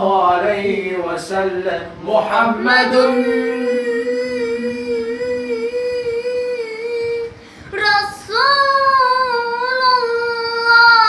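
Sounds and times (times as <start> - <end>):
girl singing: 2.4 - 6.9
lower held note: 2.4 - 7.4.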